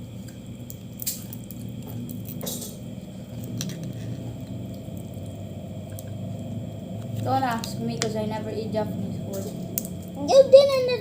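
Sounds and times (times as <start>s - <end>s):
low steady hum: 0.0s - 11.0s
clicks and clinks of crab shells: 0.2s - 2.8s.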